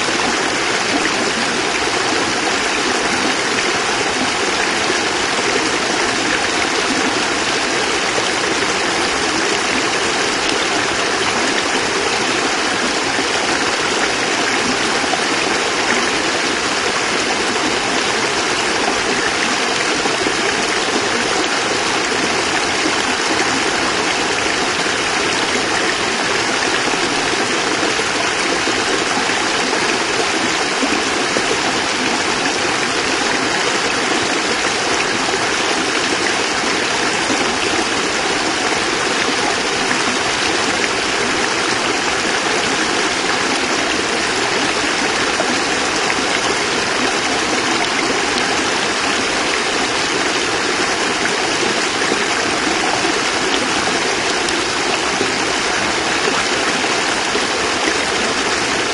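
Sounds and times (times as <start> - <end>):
water falling and splashing: 0.0 - 58.9.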